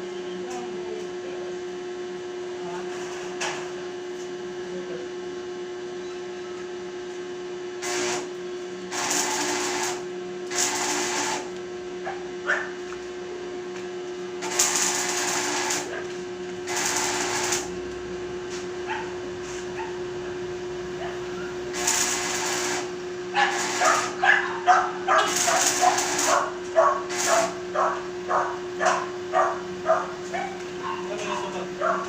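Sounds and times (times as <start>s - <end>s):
welding machine hum: 7.0s - 32.0s
arc welding sizzle: 7.8s - 32.0s.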